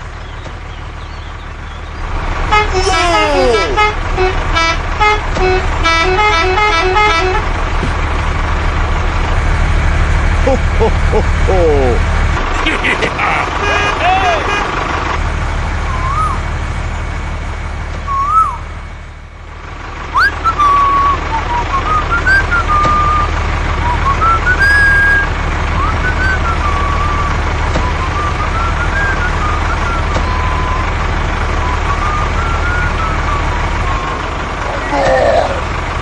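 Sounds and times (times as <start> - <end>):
person whistling a tune: 15.9 - 16.4, 18.1 - 18.6, 20.2 - 30.9, 31.6 - 34.2.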